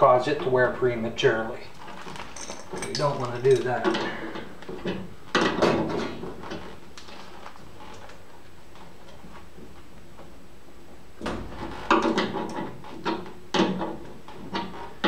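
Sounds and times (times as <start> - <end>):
tools and metal parts clanking: 1.8 - 6.2.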